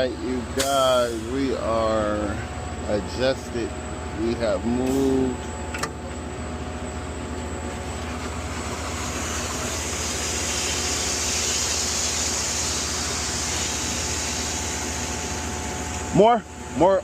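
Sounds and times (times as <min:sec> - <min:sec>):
hiss: 0:08.5 - 0:15.8.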